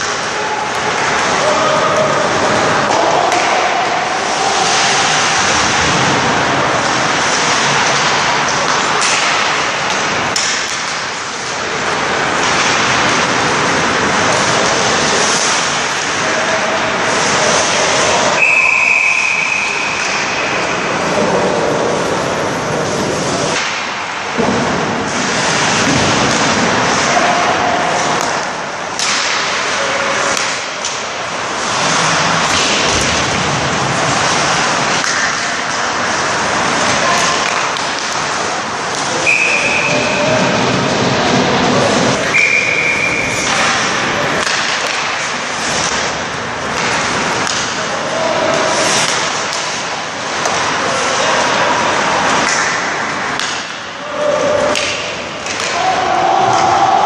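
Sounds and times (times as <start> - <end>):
players calling out: 0.0 - 7.4
steady rushing noise: 0.0 - 54.0
hockey sticks hitting puck: 0.0 - 57.0
skate blades scraping ice: 2.3 - 18.4, 24.6 - 53.8.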